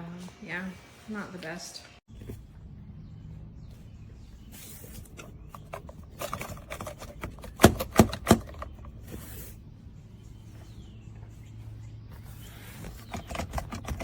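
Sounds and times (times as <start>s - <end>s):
seat belt hardware clicks and knocks: 5.6s - 8.8s.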